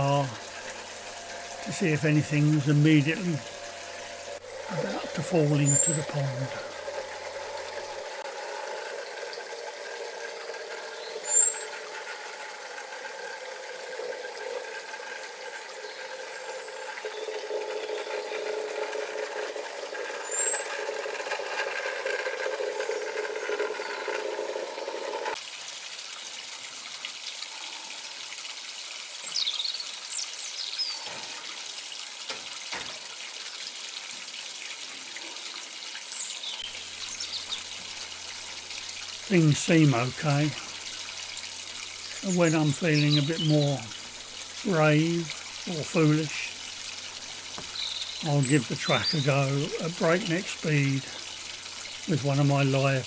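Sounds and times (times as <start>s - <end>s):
model train motor whining: 0.0s - 11.0s
small waterfall trickling: 0.0s - 53.0s.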